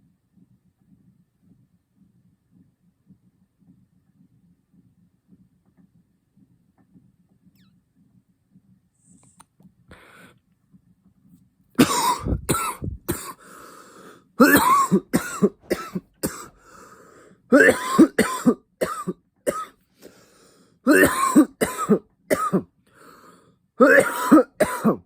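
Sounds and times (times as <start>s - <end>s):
faint breathing: 9.9s - 10.4s, 12.2s - 14.4s, 16.3s - 17.5s, 19.9s - 20.8s, 22.9s - 23.6s
man coughing loudly: 11.8s - 13.4s, 14.4s - 16.6s, 17.5s - 19.7s, 20.9s - 22.6s, 23.8s - 25.0s.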